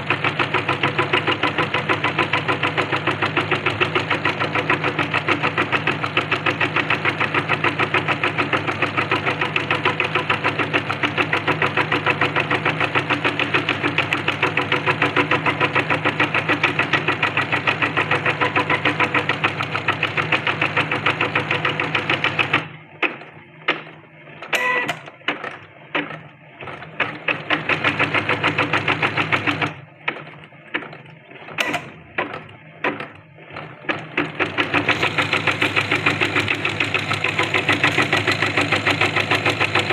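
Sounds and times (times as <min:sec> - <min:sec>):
sewing machine stitching: 0:00.0 - 0:39.9.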